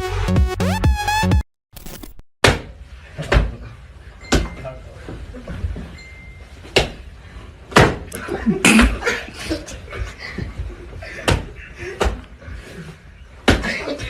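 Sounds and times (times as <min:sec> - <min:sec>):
electronic dance music: 0:00.0 - 0:01.4.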